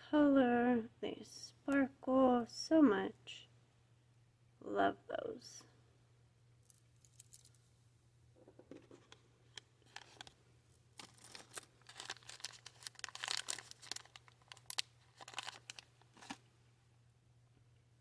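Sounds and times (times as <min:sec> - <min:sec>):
packaging crinkling and rustling: 0:08.7 - 0:10.4, 0:11.0 - 0:16.5.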